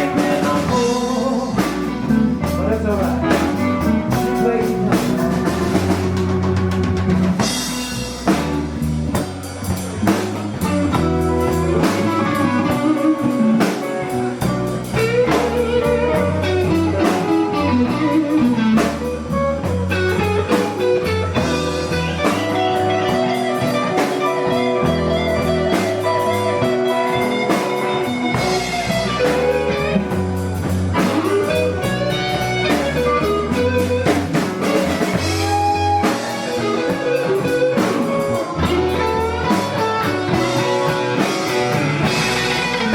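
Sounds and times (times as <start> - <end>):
bass guitar: 0.0 - 42.9
blues guitar solo: 0.0 - 42.9
drum kit: 0.0 - 42.9.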